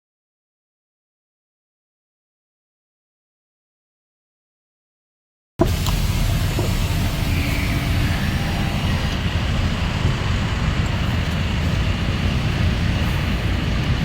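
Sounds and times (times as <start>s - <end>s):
car engine running: 5.6s - 14.0s
road rumble: 5.6s - 14.0s.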